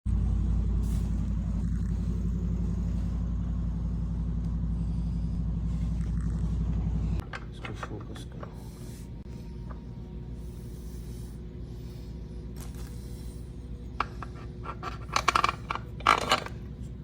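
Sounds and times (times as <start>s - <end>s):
loud low mechanical hum: 0.1s - 17.0s.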